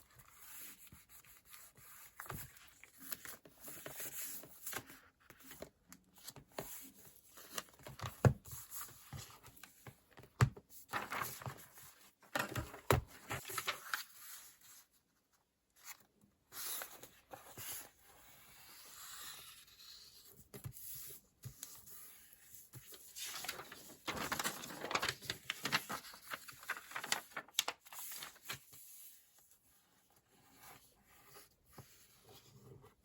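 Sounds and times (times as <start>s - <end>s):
paper rustling and sticker peeling: 10.9s - 11.6s, 23.2s - 28.6s.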